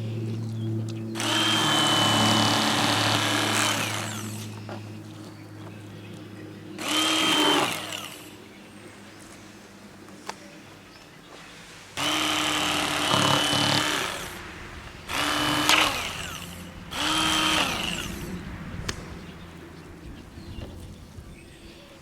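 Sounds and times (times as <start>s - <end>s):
electric knife motor whine: 1.2s - 4.8s, 6.8s - 8.4s, 12.0s - 19.5s.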